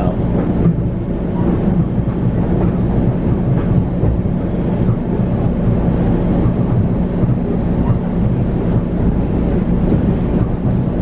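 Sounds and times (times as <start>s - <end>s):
train car rumbling on track: 0.0s - 11.0s.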